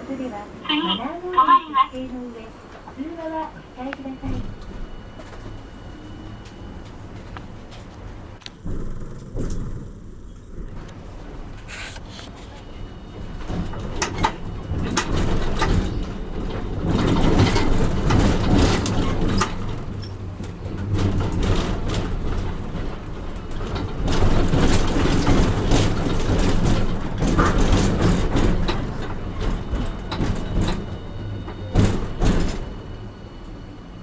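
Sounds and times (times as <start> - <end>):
tram rumbling: 0.0 - 34.0.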